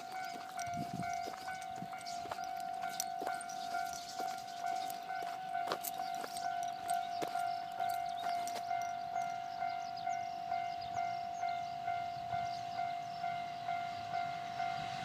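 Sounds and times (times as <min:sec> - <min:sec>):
level-crossing alarm pulsing: 0:00.0 - 0:15.0.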